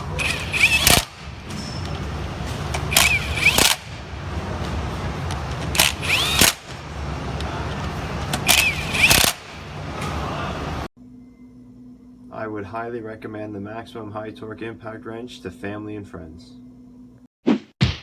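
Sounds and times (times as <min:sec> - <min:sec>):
impact wrench hammering: 0:00.0 - 0:10.2
steady low hum: 0:00.0 - 0:17.3.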